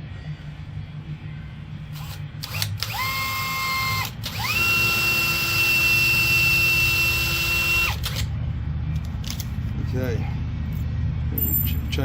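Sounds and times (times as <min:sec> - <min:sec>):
drill clicks: 0:02.0 - 0:08.3
power drill whining: 0:02.0 - 0:08.3.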